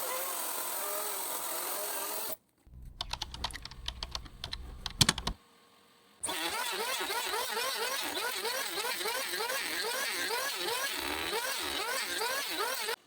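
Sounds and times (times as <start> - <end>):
low hum: 2.7 - 5.4
sharp clicks and taps: 2.7 - 5.4.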